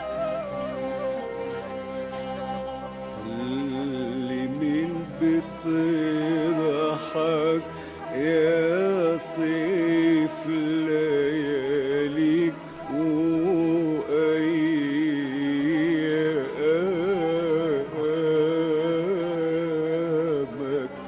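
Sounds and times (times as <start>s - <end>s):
orchestral music with ornamented melody: 0.0s - 21.0s.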